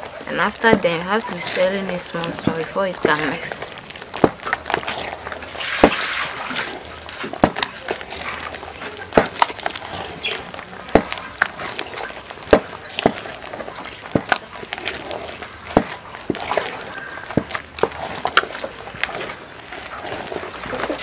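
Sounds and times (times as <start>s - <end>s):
wooden stick knocking cooking pot: 0.3s - 4.9s, 7.4s - 7.8s.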